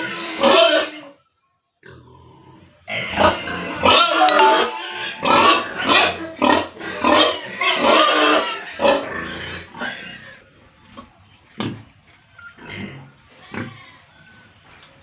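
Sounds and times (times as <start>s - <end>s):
pigs squealing and grunting: 7.7s - 10.4s.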